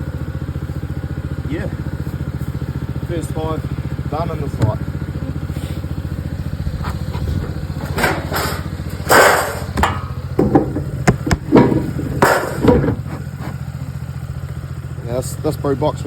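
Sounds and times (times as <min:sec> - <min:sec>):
small engine idling: 0:00.0 - 0:16.0
sharp knocks and clatters: 0:04.5 - 0:05.0, 0:06.8 - 0:13.6.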